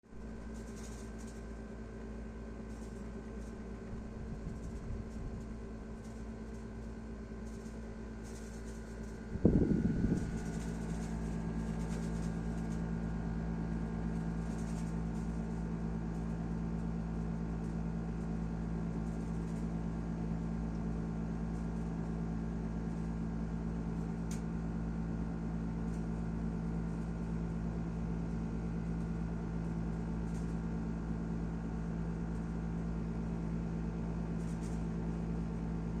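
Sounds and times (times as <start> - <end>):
air conditioner humming: 2.3 - 17.0.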